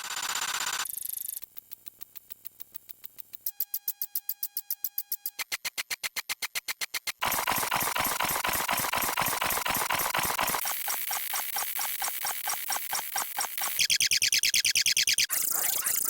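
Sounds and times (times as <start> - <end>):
rapid edited sound effects: 6.5 - 16.0.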